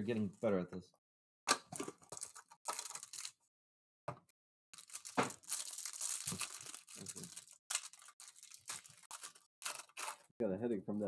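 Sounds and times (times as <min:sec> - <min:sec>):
wrapper tearing and crinkling: 0:02.0 - 0:03.4, 0:04.8 - 0:10.3.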